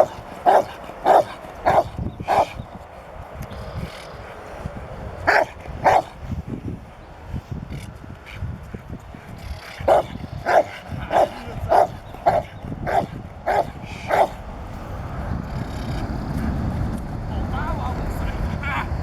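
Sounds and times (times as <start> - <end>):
dog barking: 0.0 - 2.6, 5.2 - 6.2, 9.6 - 14.4.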